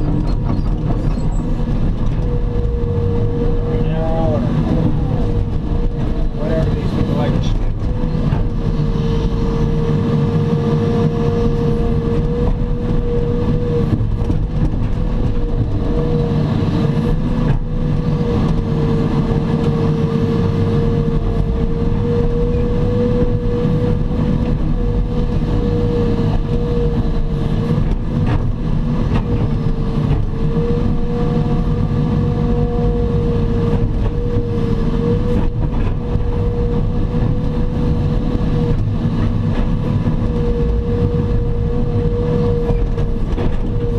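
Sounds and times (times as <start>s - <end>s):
constant mechanical whine: 0.0s - 43.9s
diesel engine running: 0.0s - 43.9s.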